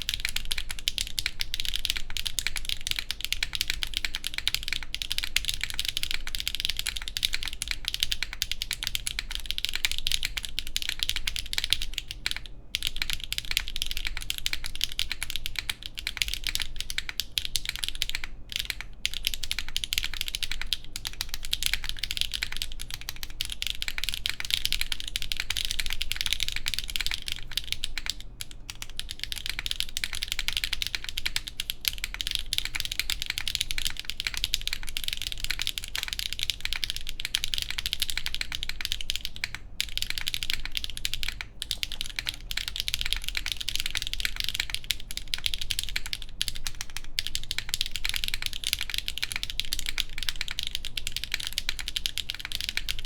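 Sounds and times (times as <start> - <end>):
mechanical keyboard typing: 0.0 - 53.0.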